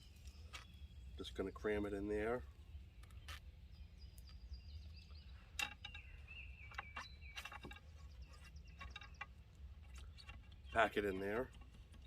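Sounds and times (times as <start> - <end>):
ramrod knocking and scraping: 5.5 - 6.1, 6.7 - 12.0.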